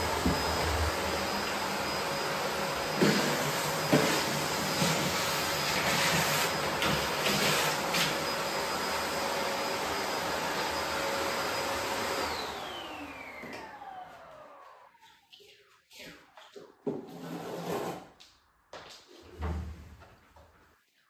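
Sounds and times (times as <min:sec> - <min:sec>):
vacuum motor winding down: 0:00.0 - 0:14.9
vacuum cleaner running: 0:00.0 - 0:15.1.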